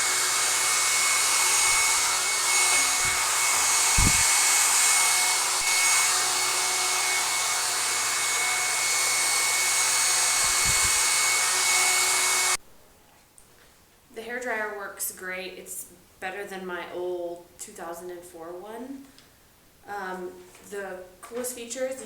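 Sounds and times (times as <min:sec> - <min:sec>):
hairdryer rushing air with whine: 0:00.0 - 0:12.6.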